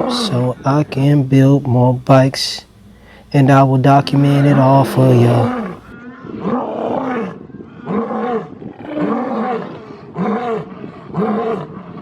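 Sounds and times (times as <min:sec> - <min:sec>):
lion roaring grunts: 0:04.3 - 0:05.9.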